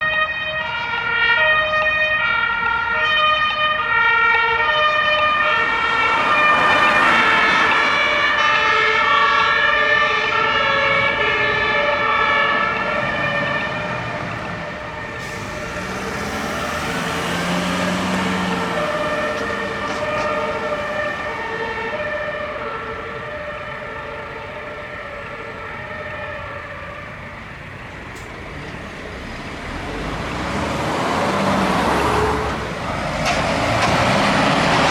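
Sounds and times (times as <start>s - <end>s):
two-tone fire engine sirens: 0.0s - 34.9s
passing vehicle engine: 4.0s - 22.7s, 27.7s - 34.9s.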